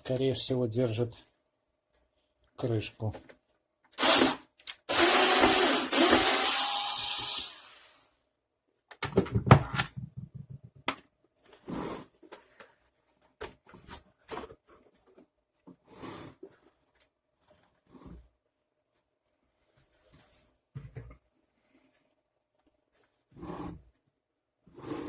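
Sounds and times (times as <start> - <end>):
plastic parts clicking and knocking: 8.9 - 11.2.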